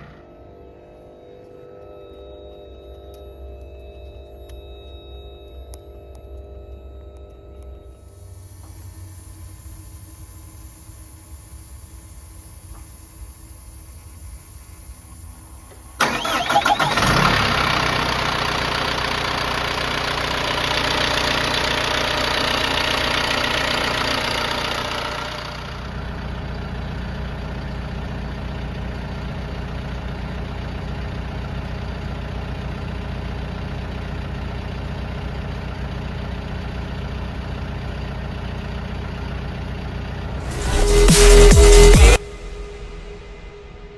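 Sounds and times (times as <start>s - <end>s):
diesel engine idling: 8.2s - 43.9s
starter motor cranking: 14.7s - 41.1s.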